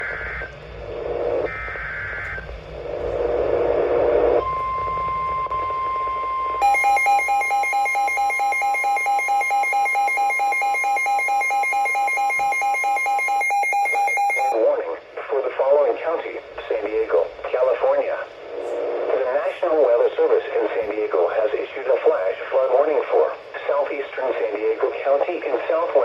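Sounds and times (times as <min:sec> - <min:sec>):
pulsed electronic alarm beeping: 0:04.4 - 0:14.6
steady alarm tone: 0:04.4 - 0:14.6
digital data bursts: 0:06.6 - 0:14.6.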